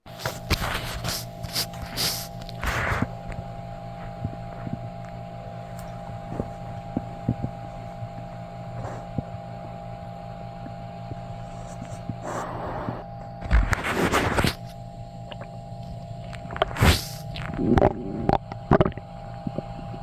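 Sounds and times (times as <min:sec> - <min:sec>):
steady low hum: 0:00.0 - 0:20.0
scratchy rustles: 0:00.1 - 0:09.6, 0:11.2 - 0:14.8
stomach gurgling: 0:00.1 - 0:20.0.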